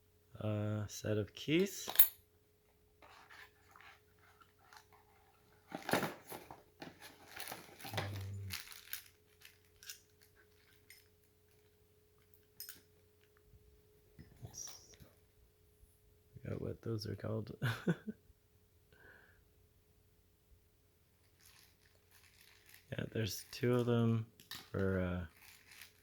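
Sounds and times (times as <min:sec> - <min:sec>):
clicks and rustles of packaging: 0:03.0 - 0:13.4, 0:21.2 - 0:26.0.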